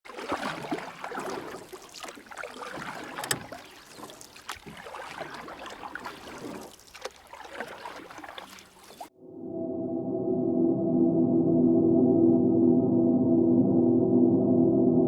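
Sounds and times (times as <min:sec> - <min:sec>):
river water churning: 0:00.1 - 0:09.1
irregular clicks and knocks: 0:03.2 - 0:03.6.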